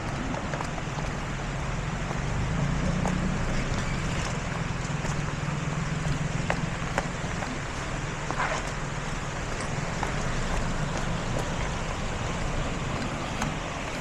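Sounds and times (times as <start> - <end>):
vehicle engine humming: 0.0 - 14.0.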